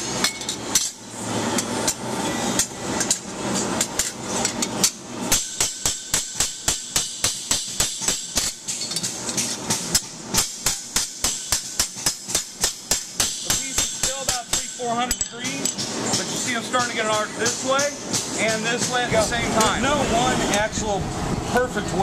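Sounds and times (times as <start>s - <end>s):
hammer striking steel: 0.0s - 1.0s, 3.8s - 19.8s.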